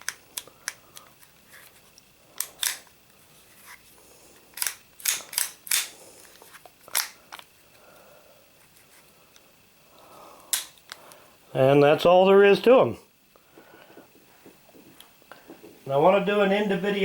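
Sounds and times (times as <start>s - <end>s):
pistol slide metallic clacks: 2.4s - 2.9s, 4.5s - 6.0s, 6.9s - 7.2s, 10.5s - 11.0s.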